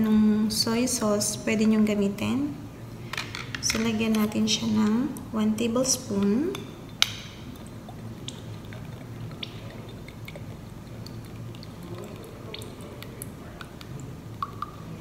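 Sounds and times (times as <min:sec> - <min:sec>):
low background hum: 0:00.0 - 0:15.0
liquid trickling into a spoon: 0:06.1 - 0:15.0.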